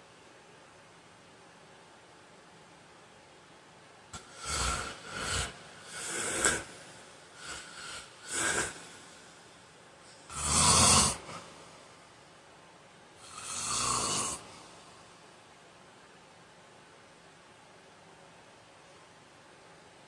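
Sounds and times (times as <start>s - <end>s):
man snoring and breathing: 4.2s - 9.4s, 10.1s - 11.6s, 13.2s - 14.6s.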